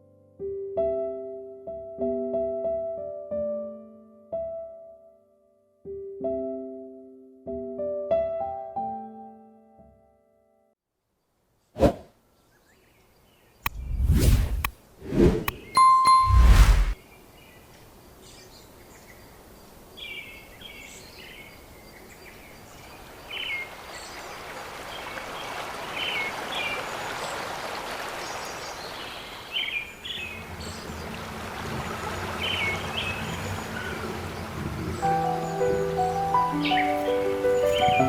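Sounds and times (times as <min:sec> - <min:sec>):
running water rushing: 0:23.5 - 0:38.0
small birds chirping: 0:28.1 - 0:38.0.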